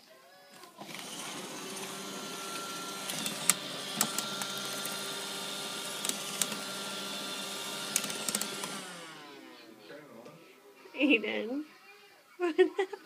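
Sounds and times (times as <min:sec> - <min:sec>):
robot vacuum motor whir: 0:00.8 - 0:09.6.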